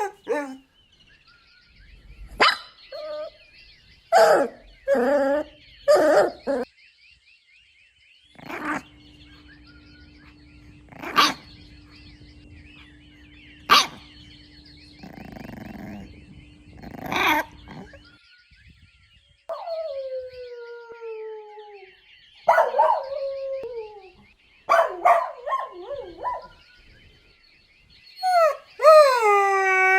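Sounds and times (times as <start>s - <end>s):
dog barking: 0.0s - 0.6s, 2.4s - 2.8s, 10.9s - 11.5s, 13.7s - 14.1s, 22.5s - 23.2s, 24.7s - 26.6s
dog whining: 0.0s - 0.6s, 4.2s - 6.7s, 28.2s - 29.9s.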